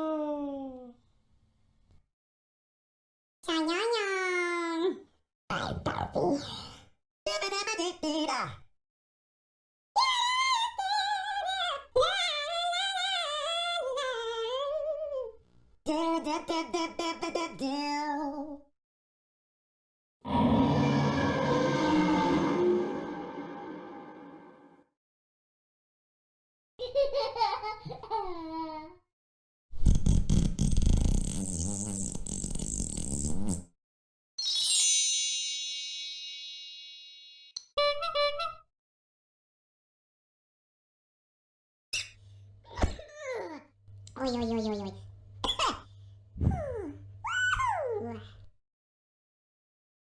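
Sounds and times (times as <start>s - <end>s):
high-pitched cartoon voice: 0.0s - 0.9s, 13.8s - 18.6s, 37.8s - 38.6s, 43.0s - 48.4s
comedy fart sound effect: 29.8s - 33.7s
magic wand chime effect: 34.4s - 37.5s.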